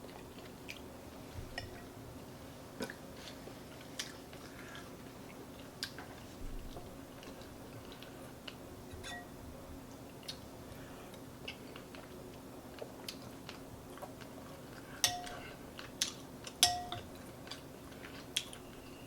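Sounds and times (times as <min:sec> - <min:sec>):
faint steady hum: 0:00.0 - 0:19.0
chewing and mouth clicks: 0:02.8 - 0:06.1, 0:11.1 - 0:14.9
metal spoon clinking bowl: 0:09.0 - 0:09.4, 0:15.0 - 0:15.4, 0:16.6 - 0:17.1.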